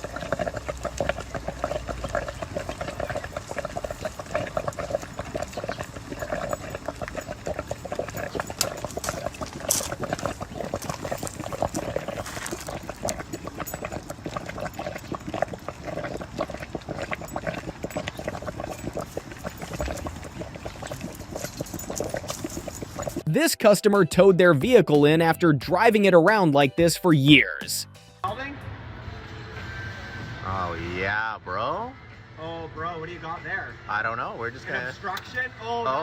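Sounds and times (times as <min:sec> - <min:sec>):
coolant bubbling and gurgling: 0:00.0 - 0:23.3.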